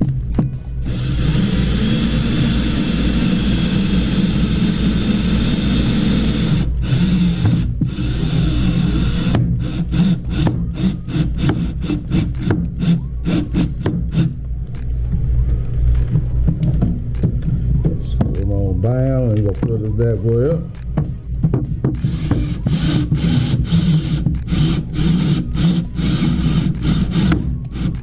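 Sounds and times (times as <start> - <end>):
power drill driving screws: 0.9 - 14.3, 22.0 - 28.0.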